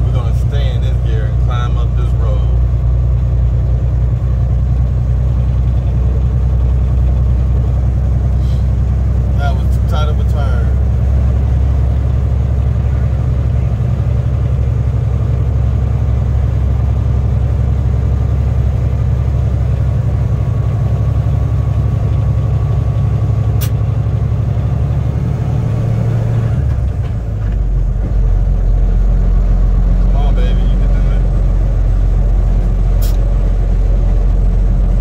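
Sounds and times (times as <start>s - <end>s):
diesel truck engine running: 0.0s - 35.0s
sharp click: 23.6s - 23.8s, 33.0s - 33.3s.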